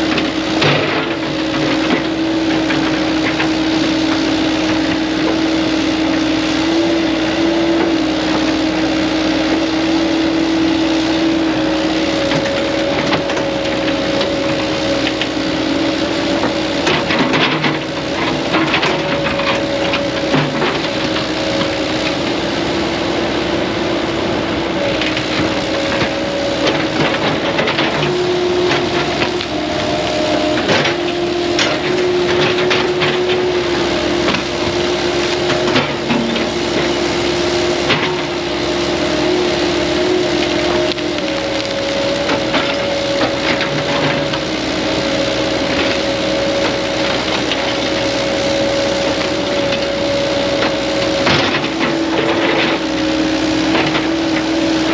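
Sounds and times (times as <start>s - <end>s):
heavy diesel machine running: 0.0s - 54.9s
wood cracking and snapping: 40.5s - 44.4s.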